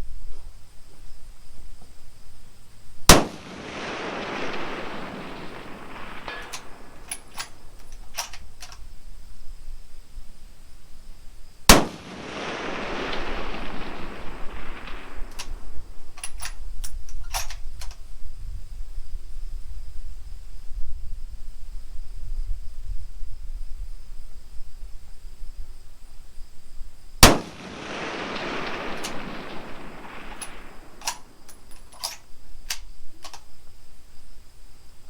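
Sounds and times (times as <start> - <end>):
rifle shots with echo: 3.1 - 8.3, 11.7 - 16.5, 27.2 - 31.8.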